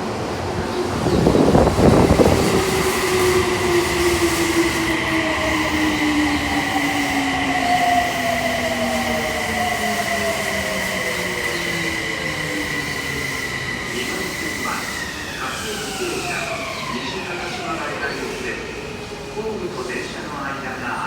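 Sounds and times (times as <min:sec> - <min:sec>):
subway train rushing in: 0:00.0 - 0:21.0
high brake squeal: 0:06.3 - 0:18.6.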